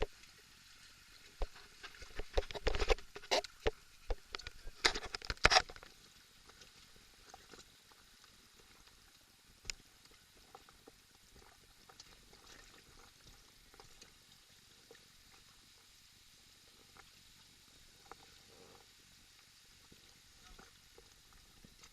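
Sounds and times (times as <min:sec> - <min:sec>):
small ticks: 0:00.0 - 0:15.5
faint water noise: 0:00.0 - 0:21.9.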